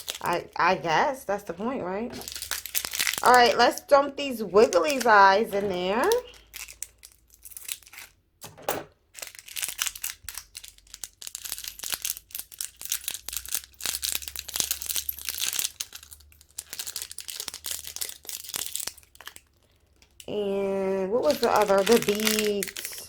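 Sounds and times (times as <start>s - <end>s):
plastic packet crinkling: 0.0s - 8.2s, 9.0s - 20.3s, 21.2s - 23.0s
small plastic pieces clicking: 2.2s - 3.6s, 9.2s - 20.3s, 21.2s - 23.0s.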